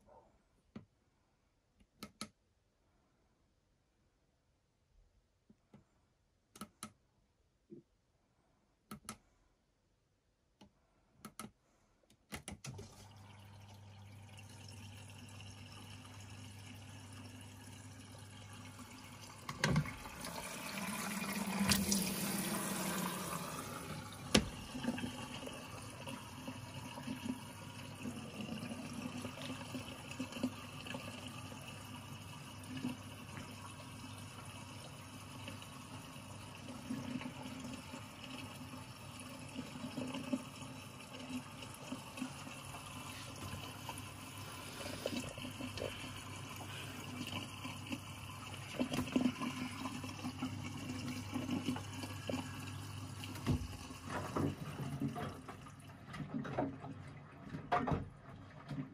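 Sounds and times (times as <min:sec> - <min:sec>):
clicks: 0:01.8 - 0:02.4, 0:06.5 - 0:07.0, 0:08.9 - 0:09.2, 0:10.6 - 0:12.8
water inlet valve hum: 0:12.8 - 0:57.6
water rushing into drum: 0:18.5 - 0:31.3, 0:41.3 - 0:58.9.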